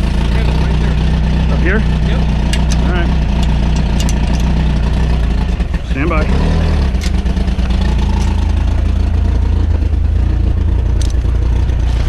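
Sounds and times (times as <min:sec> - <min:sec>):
engine running at low revs: 0:00.0 - 0:12.0
sharp clicks: 0:02.4 - 0:04.6, 0:11.0 - 0:11.3.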